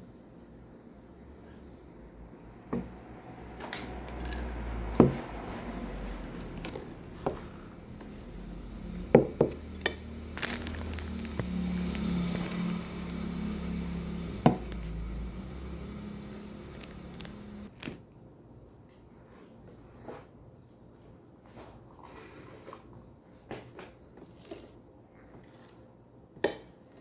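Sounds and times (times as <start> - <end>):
low steady hum: 1.0 - 17.9.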